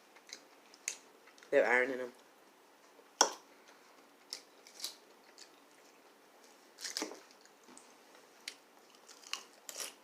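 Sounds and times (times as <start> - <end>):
crunchy salad chewing: 8.4 - 10.0.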